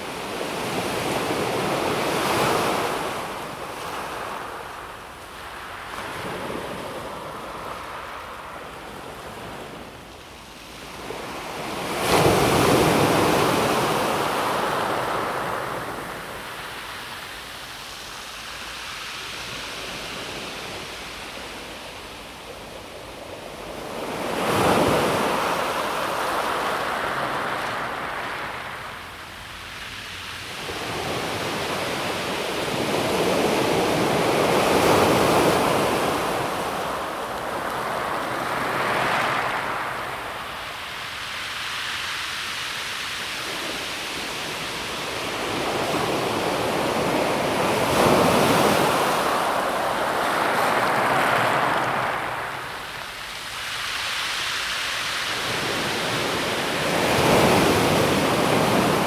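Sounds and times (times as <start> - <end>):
waves breaking on pebble beach: 23.8 - 28.9, 30.5 - 59.0.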